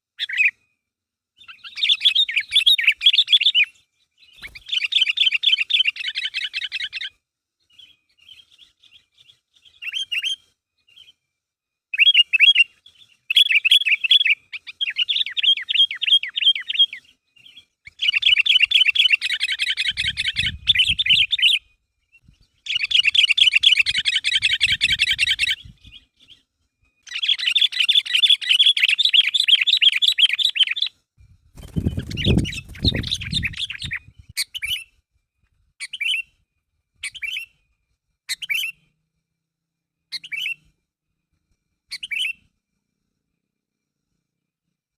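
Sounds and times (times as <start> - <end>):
bulbul singing in chattering bursts: 18.0 - 21.6, 22.6 - 25.8, 31.6 - 34.6.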